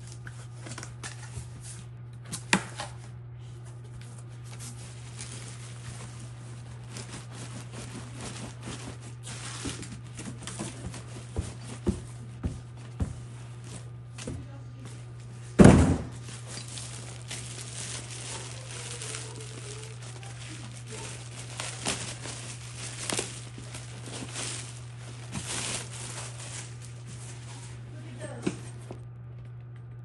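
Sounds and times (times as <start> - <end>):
steady low hum: 0.0 - 30.0
box thudding: 15.6 - 18.3.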